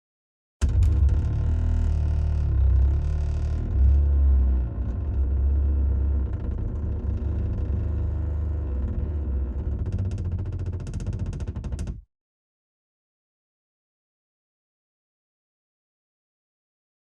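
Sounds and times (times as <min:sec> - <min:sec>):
low heavy rumble: 0:00.6 - 0:09.9.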